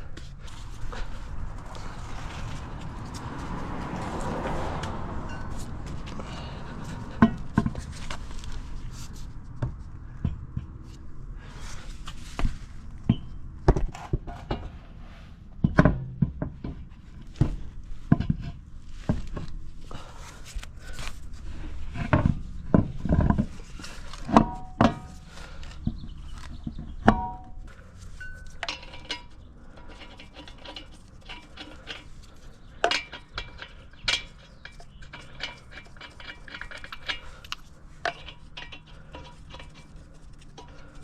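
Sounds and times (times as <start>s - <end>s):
wheel and tools knocking: 0.4s - 8.6s, 20.8s - 41.0s.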